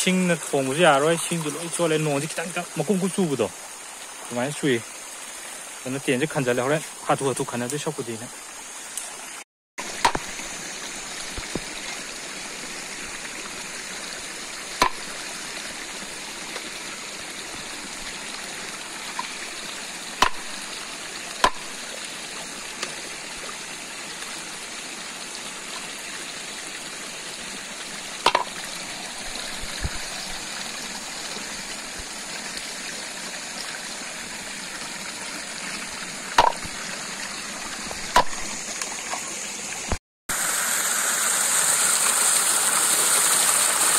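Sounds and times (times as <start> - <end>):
stream running: 0.0 - 43.9
sharp clicks or knocks: 20.2 - 20.6, 28.2 - 28.6, 36.4 - 36.8.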